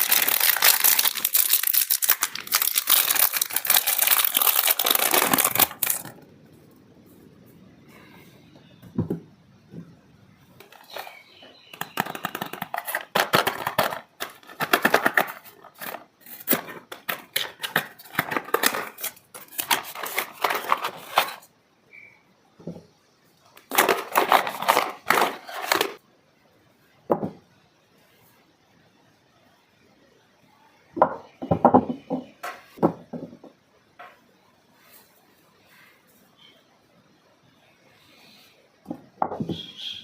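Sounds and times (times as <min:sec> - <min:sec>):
packaging crinkling: 0:00.0 - 0:06.2, 0:11.8 - 0:21.4, 0:23.7 - 0:26.0.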